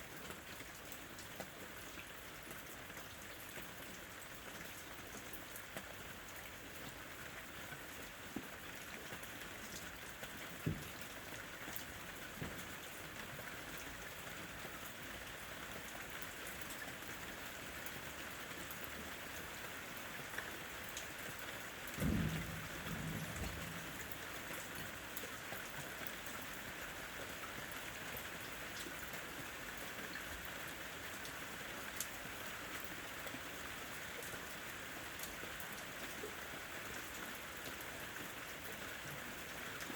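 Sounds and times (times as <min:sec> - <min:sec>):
steady rain falling: 0:00.0 - 0:39.9
low rumble of thunder: 0:21.9 - 0:24.6.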